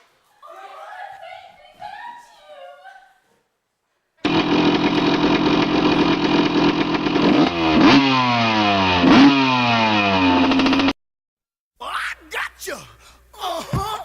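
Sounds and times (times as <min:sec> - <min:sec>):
loud engine revving: 0:04.2 - 0:11.0.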